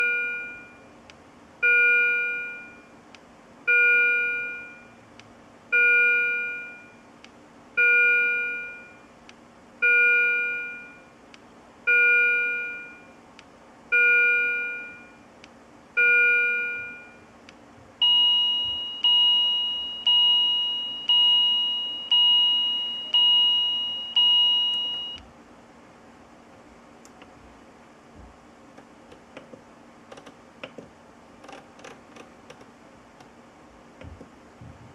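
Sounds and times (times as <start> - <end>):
patient monitor alarm chime: 0.0 - 0.8, 9.8 - 11.1, 14.0 - 15.2, 16.0 - 17.2, 18.0 - 25.2
faster alarm tone: 18.0 - 25.2.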